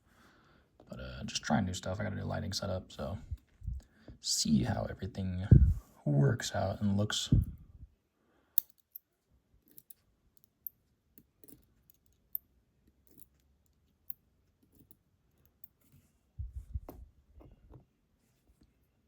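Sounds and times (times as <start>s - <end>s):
padlock parts clicking: 8.6s - 15.8s.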